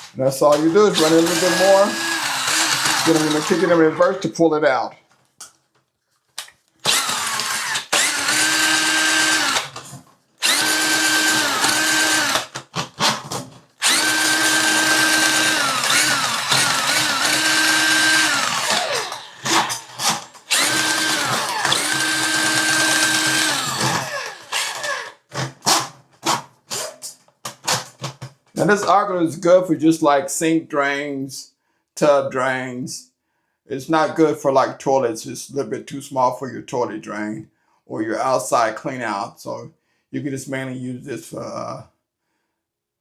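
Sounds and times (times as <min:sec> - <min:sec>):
drain auger motor spinning: 0:00.6 - 0:04.0, 0:06.9 - 0:09.8, 0:10.4 - 0:12.5, 0:13.8 - 0:25.2.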